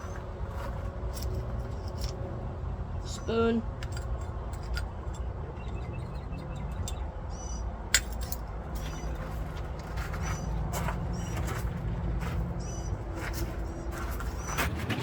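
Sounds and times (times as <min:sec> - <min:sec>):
steady low rumble: 0:00.0 - 0:15.0
light metallic clinks and taps: 0:03.8 - 0:07.0, 0:07.9 - 0:09.2.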